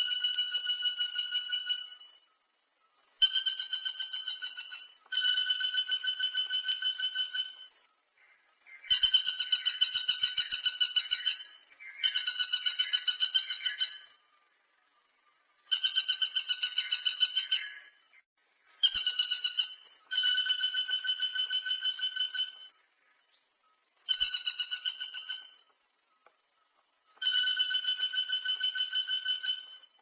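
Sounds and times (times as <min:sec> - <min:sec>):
woodpecker rattling call: 0:03.2 - 0:14.2, 0:15.6 - 0:18.1, 0:18.8 - 0:23.3, 0:24.1 - 0:30.0.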